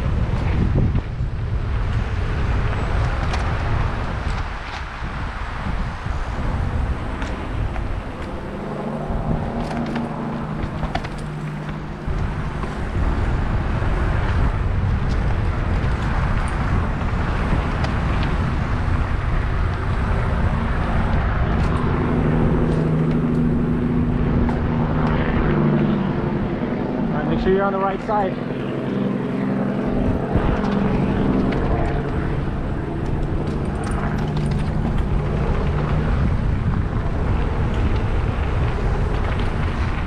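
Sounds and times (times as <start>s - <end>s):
bike tyres rolling over dirt: 0.0s - 40.0s
wind on microphone: 0.0s - 40.0s
steady low hum: 5.2s - 40.0s
bike knocks and rattles: 7.0s - 25.3s, 29.9s - 40.0s.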